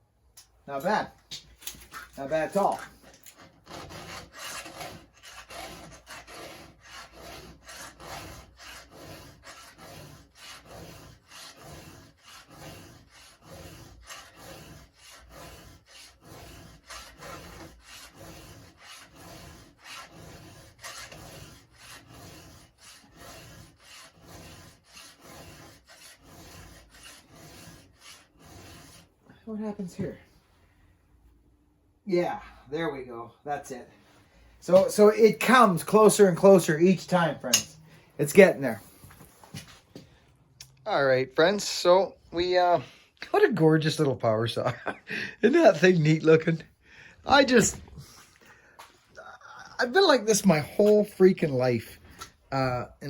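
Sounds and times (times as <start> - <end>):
file rasping on chainsaw chain: 2.3 - 29.1.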